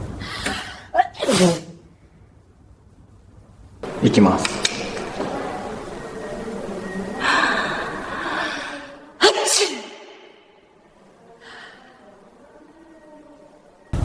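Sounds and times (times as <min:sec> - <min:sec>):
faint breath: 0:00.1 - 0:00.9, 0:07.1 - 0:09.1, 0:11.4 - 0:12.4
person sneezing: 0:00.4 - 0:01.8, 0:09.2 - 0:10.2.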